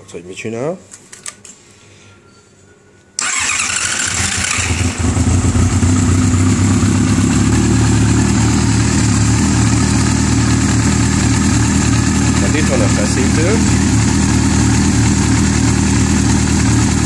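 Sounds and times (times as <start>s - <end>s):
electric starter cranking: 3.2s - 5.5s
motorcycle engine idling: 3.2s - 17.0s.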